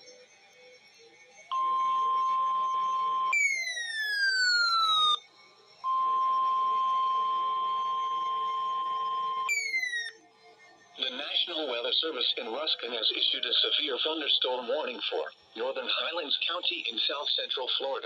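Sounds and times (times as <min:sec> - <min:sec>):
steady alarm tone: 0:00.0 - 0:13.3
falling pitch alarm tone: 0:01.5 - 0:05.2, 0:05.8 - 0:10.2.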